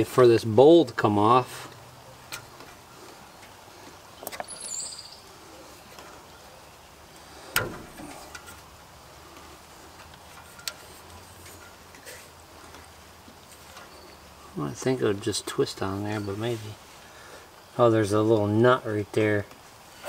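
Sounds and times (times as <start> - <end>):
bird chirping: 2.0 - 7.0, 13.6 - 17.4.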